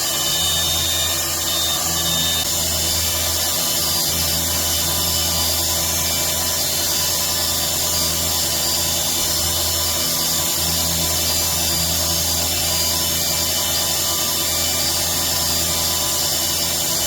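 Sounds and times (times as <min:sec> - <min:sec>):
machine motors whining: 0:00.0 - 0:02.9.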